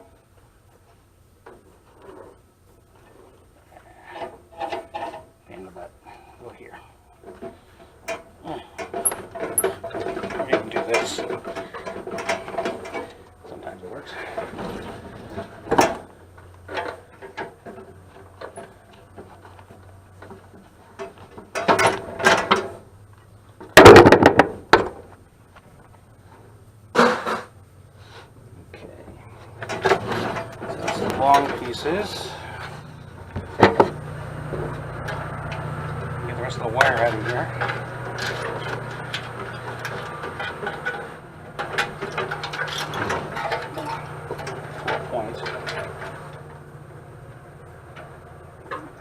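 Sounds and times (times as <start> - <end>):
metal rattling clatter: 7.2 - 22.8, 29.4 - 49.0
scraping knocks: 29.4 - 46.7.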